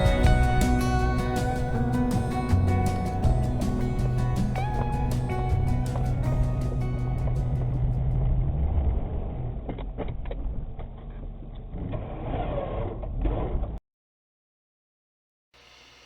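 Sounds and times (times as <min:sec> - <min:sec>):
vehicle engine rumble: 0:00.0 - 0:10.8.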